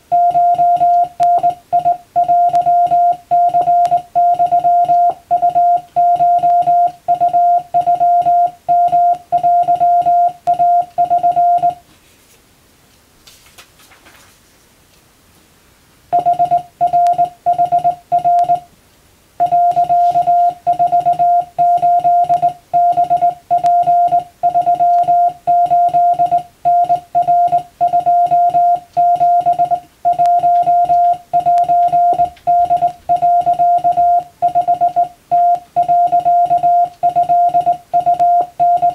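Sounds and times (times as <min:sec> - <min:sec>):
morse code tone: 0:00.0 - 0:11.8, 0:16.1 - 0:18.7, 0:19.4 - 0:38.9
faint brief rustle: 0:13.2 - 0:15.0.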